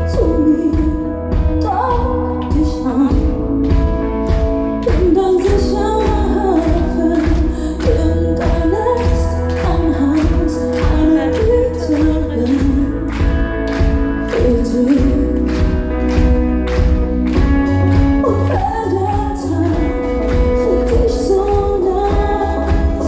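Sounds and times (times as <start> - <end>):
heavy bass: 0.0 - 23.0
pop band playing: 0.0 - 23.0
woman singing: 0.0 - 23.0.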